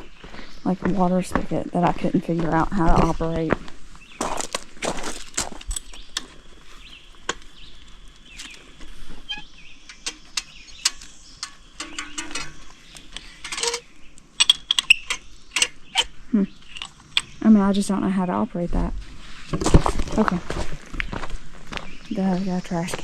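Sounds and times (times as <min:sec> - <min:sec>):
spigot handle metallic clicks: 0:09.9 - 0:13.8, 0:14.4 - 0:16.1.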